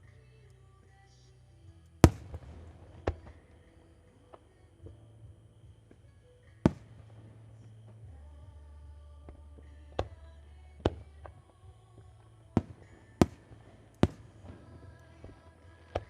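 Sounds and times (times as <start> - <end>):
quiet background music: 0.0 - 16.0
faint firework pops: 2.0 - 5.0, 5.6 - 8.1
fireworks bangs: 2.0 - 8.3, 10.8 - 16.0.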